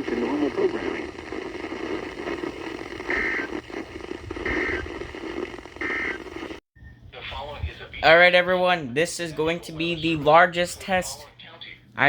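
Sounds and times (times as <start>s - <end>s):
radio static hissing: 0.0s - 8.0s.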